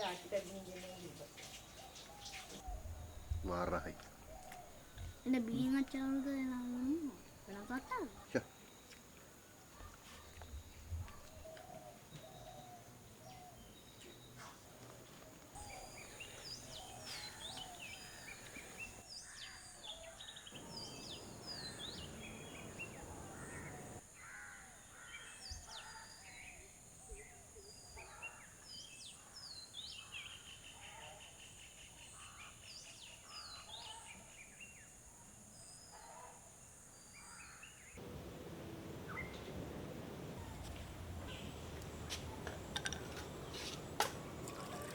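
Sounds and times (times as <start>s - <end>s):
birds chirping and whistling: 20.6s - 24.0s, 38.0s - 44.9s.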